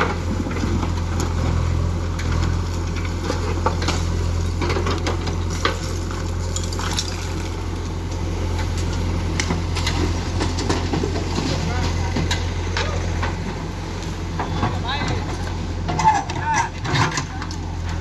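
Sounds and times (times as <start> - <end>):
diesel engine humming: 0.0 - 18.0
clattering and scraping: 8.6 - 13.6, 14.3 - 18.0.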